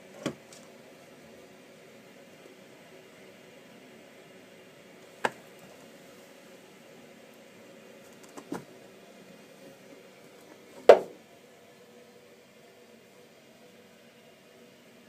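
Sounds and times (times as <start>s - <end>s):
faint steady hum: 0.0s - 15.0s
sharp knocks: 10.9s - 11.2s.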